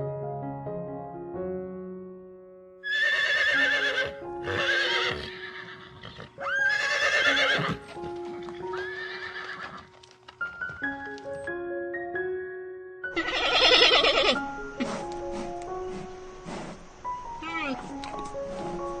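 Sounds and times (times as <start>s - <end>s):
soft piano music: 0.0s - 19.0s
high-pitched animal calls: 13.2s - 15.0s.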